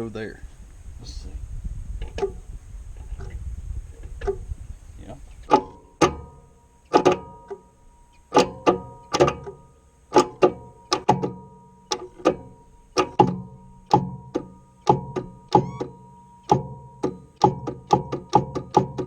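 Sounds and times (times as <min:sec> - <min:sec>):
held tones: 0:05.5 - 0:18.8
plucked guitar-like notes: 0:05.5 - 0:19.0.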